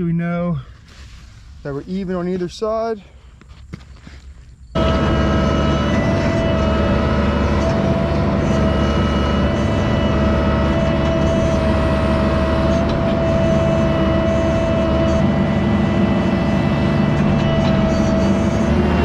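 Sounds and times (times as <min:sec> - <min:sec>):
steady whine: 0:04.6 - 0:19.0
diesel engine running: 0:04.8 - 0:19.0.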